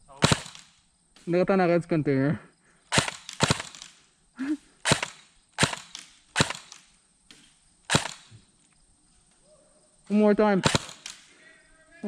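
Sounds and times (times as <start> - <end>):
airsoft gun shots: 0.1 - 0.8, 2.9 - 4.0, 4.8 - 6.9, 7.9 - 8.4, 10.6 - 11.2.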